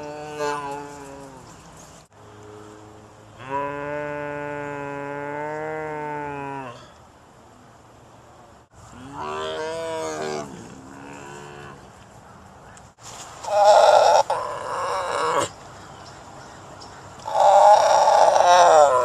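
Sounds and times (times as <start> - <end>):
tiger moaning call: 13.5 - 15.5, 17.2 - 19.0.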